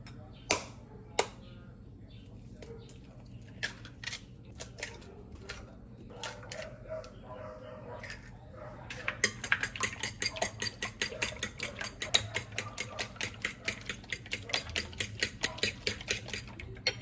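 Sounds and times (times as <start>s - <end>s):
utensil knocking rapidly: 9.2s - 17.0s.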